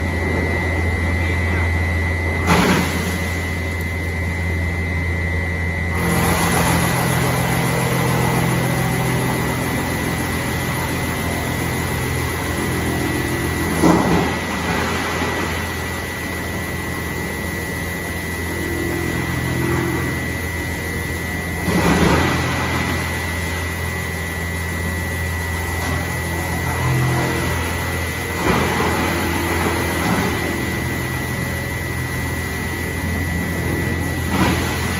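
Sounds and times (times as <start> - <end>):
wood chipper running: 0.0 - 34.9.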